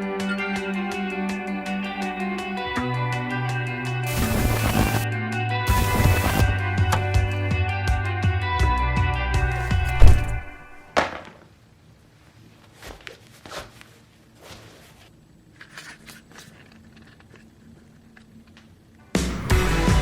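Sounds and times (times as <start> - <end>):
sharp knock: 9.7 - 10.8
soft clicks scrapes and crunches: 14.6 - 18.8.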